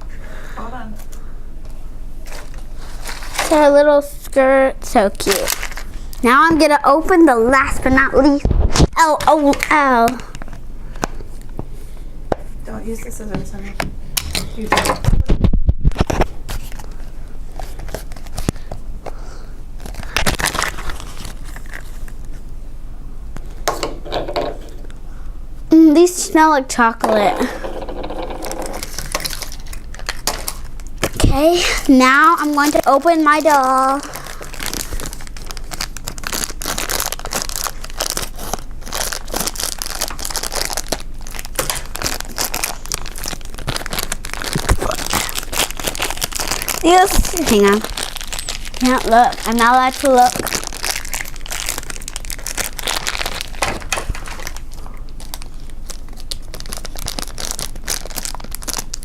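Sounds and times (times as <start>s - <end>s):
plastic packaging tearing and crinkling: 2.2s - 3.9s, 4.9s - 6.6s, 14.2s - 18.7s, 19.8s - 22.4s, 27.9s - 59.0s.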